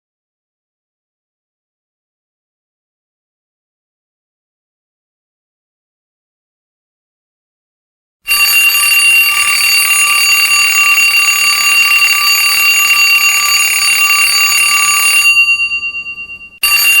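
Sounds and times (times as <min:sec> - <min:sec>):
alarm clock ringing: 0:08.3 - 0:17.0.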